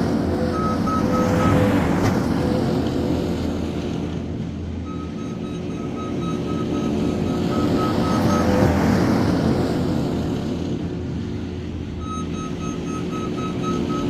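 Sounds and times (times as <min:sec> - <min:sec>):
diesel engine running under load: 0:00.0 - 0:14.0
reversing alarm beeping: 0:00.4 - 0:01.8, 0:04.8 - 0:08.8, 0:12.0 - 0:14.0.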